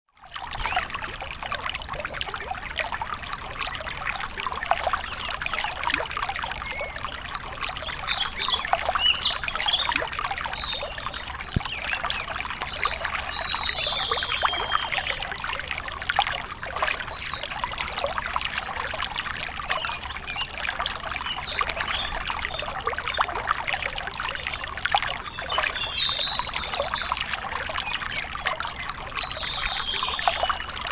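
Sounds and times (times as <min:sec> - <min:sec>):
stream trickling over rocks: 0:00.1 - 0:30.9
birds chirping: 0:06.7 - 0:15.2.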